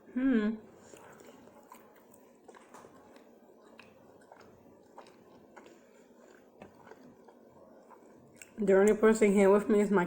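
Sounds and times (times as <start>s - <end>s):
person chewing crunchy chips: 0.8s - 8.6s.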